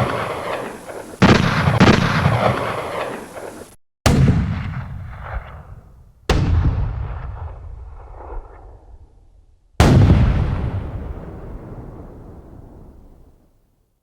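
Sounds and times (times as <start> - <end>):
heavy weapon booms: 4.1 - 9.1, 9.8 - 13.2.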